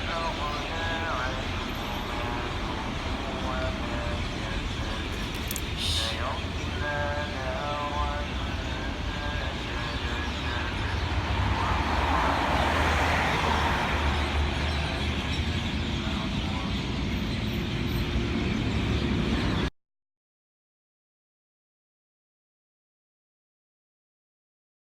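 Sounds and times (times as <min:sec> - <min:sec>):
distant chanted prayer: 0:00.0 - 0:18.8
road traffic: 0:00.0 - 0:19.7
vehicle passing: 0:00.2 - 0:19.5.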